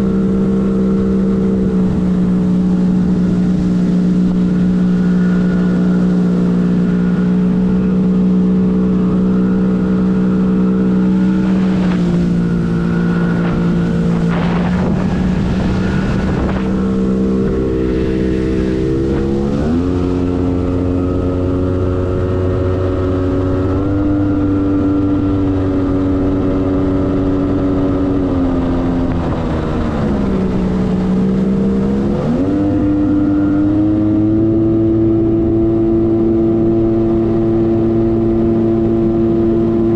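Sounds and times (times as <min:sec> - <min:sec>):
personal watercraft engine running: 0:00.0 - 0:39.9
rushing water spray: 0:00.9 - 0:26.8.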